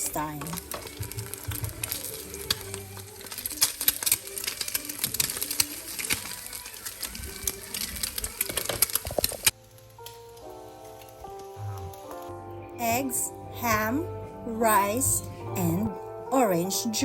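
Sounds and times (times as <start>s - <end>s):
hot oil crackling in a pan: 0.0s - 12.5s
background music: 0.0s - 17.0s.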